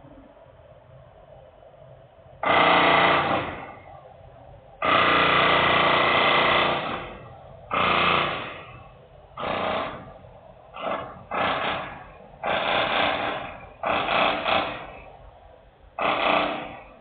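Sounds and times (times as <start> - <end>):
industrial machinery rattling and buzzing: 2.4 - 3.9, 4.8 - 15.2, 16.0 - 17.0.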